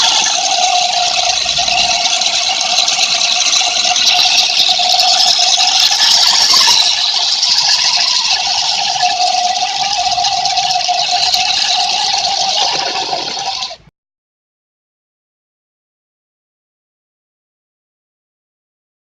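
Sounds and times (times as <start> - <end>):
toy car electric motor whine: 0.0 - 9.0.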